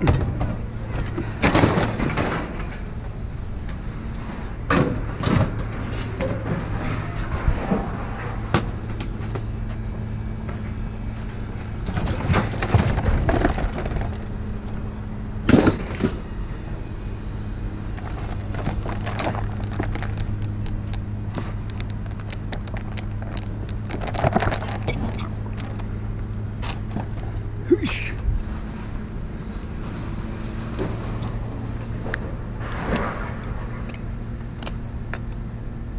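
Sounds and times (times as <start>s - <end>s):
scrap metal clanking and crashing: 0.0s - 3.1s, 4.2s - 9.4s, 11.6s - 16.4s, 17.9s - 20.5s
low machine hum: 0.0s - 35.9s.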